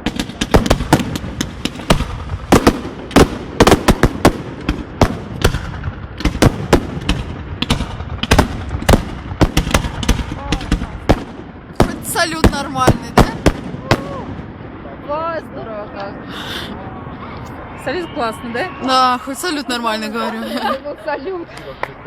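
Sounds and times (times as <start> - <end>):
fireworks bangs and crackles: 0.0 - 16.2
rumbling echo: 0.0 - 18.0.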